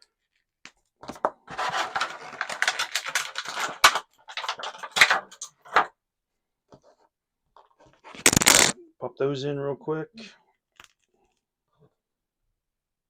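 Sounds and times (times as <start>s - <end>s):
plastic packaging crackling: 1.6s - 5.9s, 8.2s - 8.8s.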